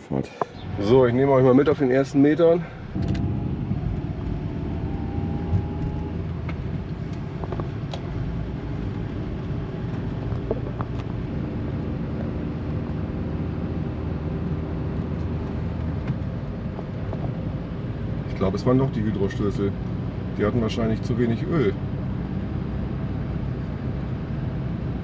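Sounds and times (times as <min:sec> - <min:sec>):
car engine hum: 0:00.0 - 0:25.0
road noise inside cabin: 0:00.0 - 0:25.0.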